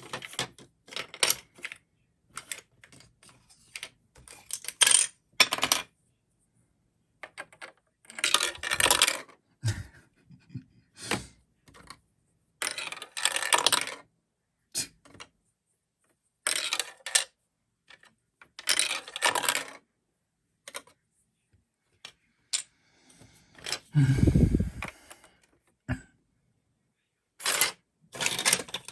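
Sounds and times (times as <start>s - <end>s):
plastic pieces clicking and clattering: 0.0s - 5.9s, 7.2s - 9.4s, 12.6s - 14.1s, 16.4s - 19.8s, 27.4s - 28.9s.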